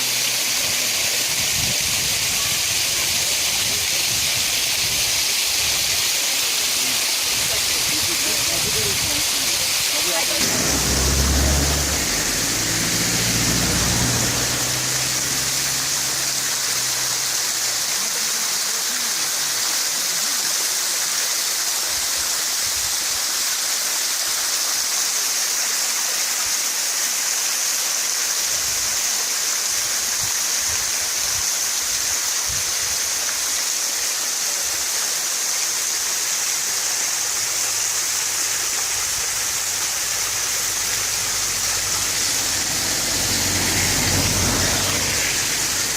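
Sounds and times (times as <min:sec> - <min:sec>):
water pouring down a waterfall: 0:00.0 - 0:45.9
low rumble: 0:10.3 - 0:17.5.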